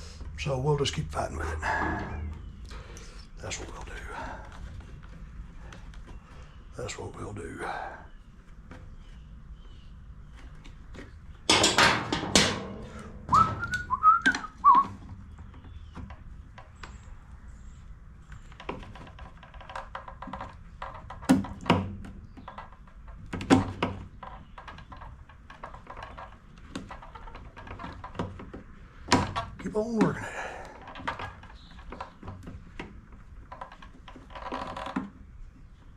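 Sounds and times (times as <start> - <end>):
tools thunking and knocking: 11.4 - 14.4
high-pitched whistle-like tone: 13.3 - 14.9.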